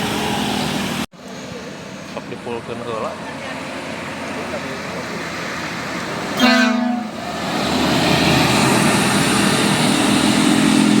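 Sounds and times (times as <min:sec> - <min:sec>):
bus engine noise: 0:00.0 - 0:11.0
bus horn blast: 0:06.4 - 0:07.3.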